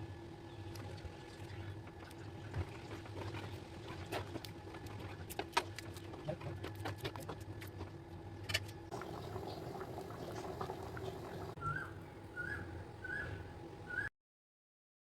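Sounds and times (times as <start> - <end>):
dal bubbling and popping in a pot: 8.9 - 11.6
steady low hum: 8.9 - 13.9.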